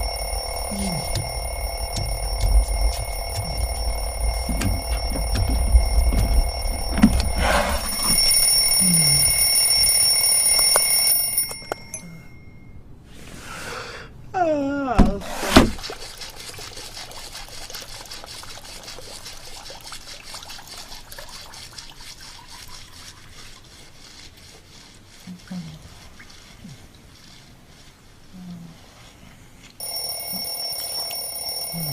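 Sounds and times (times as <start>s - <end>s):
falling wavering tone: 0.0s - 10.3s
alarm clock ringing: 0.0s - 12.8s, 29.8s - 31.9s.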